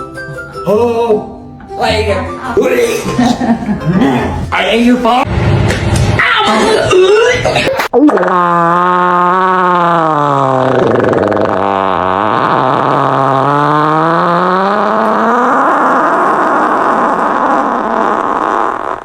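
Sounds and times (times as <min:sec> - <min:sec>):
buzzing fart sound: 0:07.8 - 0:19.0.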